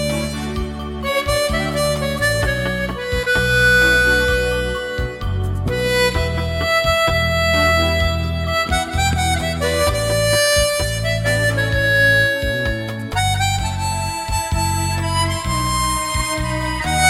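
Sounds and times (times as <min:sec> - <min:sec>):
backing track with bass and guitar: 0:00.0 - 0:17.0
chromatic harmonica melody: 0:00.0 - 0:17.0.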